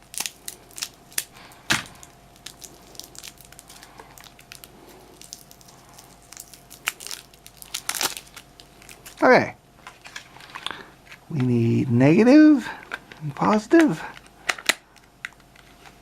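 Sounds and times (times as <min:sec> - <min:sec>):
plastic wrapping crinkling: 0:00.0 - 0:09.2, 0:09.8 - 0:11.7.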